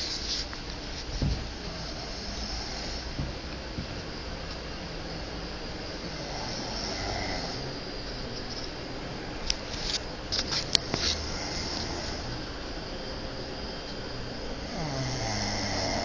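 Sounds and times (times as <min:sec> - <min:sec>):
person breathing noisily: 0:01.6 - 0:03.2
snoring: 0:01.7 - 0:03.2, 0:06.1 - 0:07.7, 0:11.1 - 0:12.4, 0:14.6 - 0:16.0.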